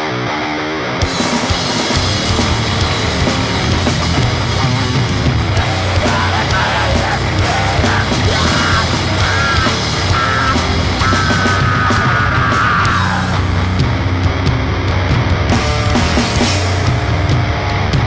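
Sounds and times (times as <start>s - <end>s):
distorted heavy band playing: 0.0s - 18.0s
screamed vocals: 4.4s - 13.9s.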